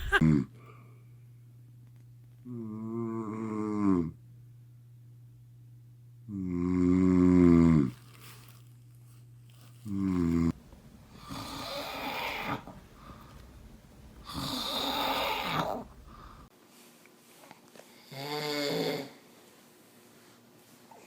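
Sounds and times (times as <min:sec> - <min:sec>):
man snoring: 0:02.5 - 0:04.2, 0:06.3 - 0:07.9, 0:10.0 - 0:13.3, 0:14.2 - 0:16.5, 0:18.1 - 0:19.2.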